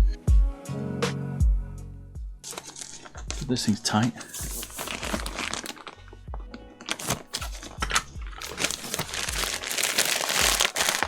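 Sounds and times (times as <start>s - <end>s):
crinkling rustling handling noise: 2.5s - 11.0s.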